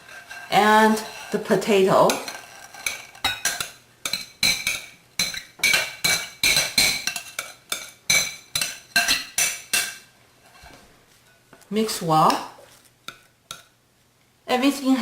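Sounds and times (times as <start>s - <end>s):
utensil clinking against bowl: 2.0s - 10.0s.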